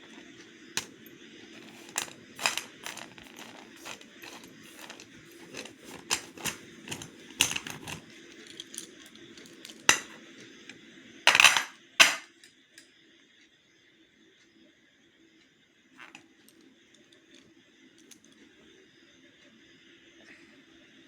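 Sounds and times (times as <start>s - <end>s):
slate pencils clicking: 0.0s - 0.2s, 1.6s - 10.2s, 11.3s - 12.4s
slate pencils clattering: 0.0s - 10.2s, 11.3s - 12.4s.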